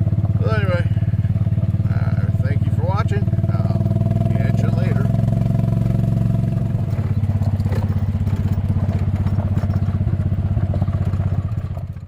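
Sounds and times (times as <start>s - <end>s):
engine chugging: 0.0s - 12.0s
faint rattles: 6.6s - 12.0s.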